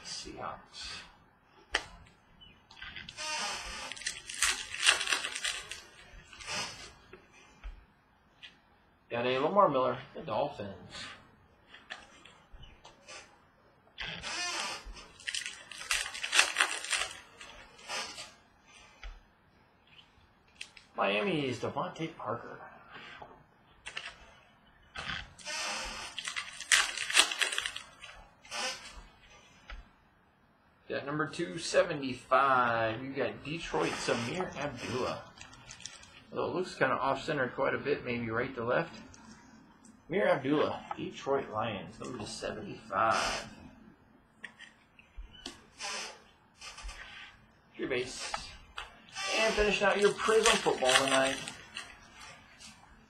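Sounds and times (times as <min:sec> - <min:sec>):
cards and foil wrapping rustling: 0:03.0 - 0:06.9, 0:14.3 - 0:18.3, 0:25.3 - 0:29.0, 0:33.6 - 0:36.3, 0:47.9 - 0:52.8
cards rustling and sliding: 0:48.0 - 0:52.8.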